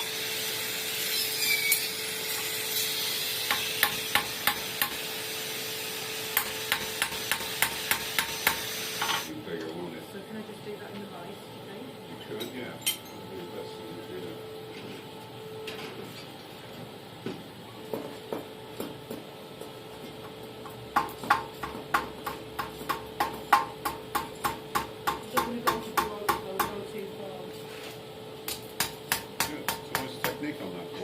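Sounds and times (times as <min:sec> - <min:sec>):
hammer striking steel on anvil: 0:03.5 - 0:05.1, 0:06.3 - 0:09.3, 0:28.5 - 0:30.4.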